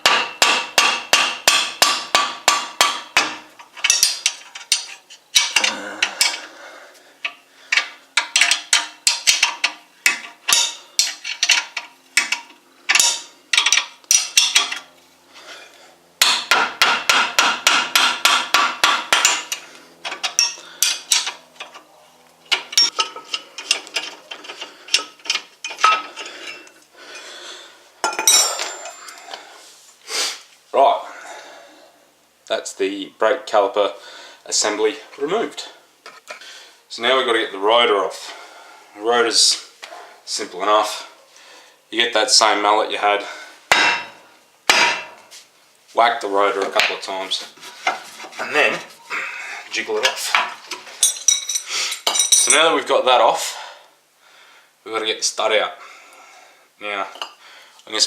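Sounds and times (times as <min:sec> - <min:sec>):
hammer tapping on spanner: 0:07.2 - 0:14.8.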